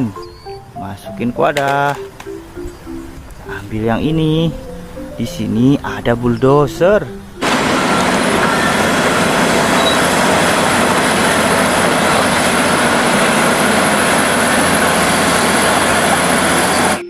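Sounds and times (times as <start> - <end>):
bulldozer engine rumble: 7.1 - 17.0.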